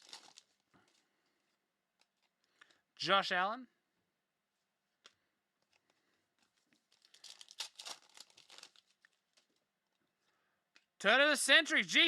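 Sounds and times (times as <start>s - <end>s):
plastic crinkling: 0.0s - 2.8s, 5.6s - 9.6s.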